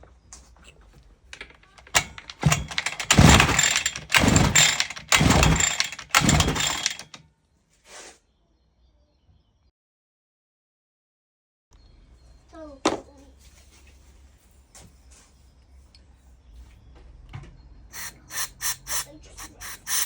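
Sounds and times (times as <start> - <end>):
faint rattle: 1.3 - 7.2
strimmer recoil starter pulls: 1.4 - 7.2
engine spinning over: 1.8 - 7.2.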